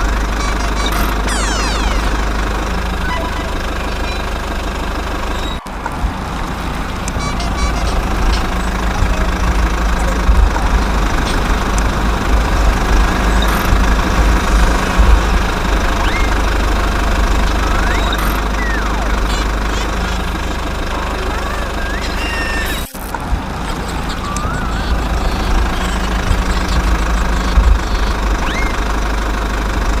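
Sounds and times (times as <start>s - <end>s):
small motor pulsing: 0.0s - 29.7s
small engine rumbling: 0.0s - 30.0s
short rising chirps: 0.3s - 4.3s, 15.6s - 20.5s.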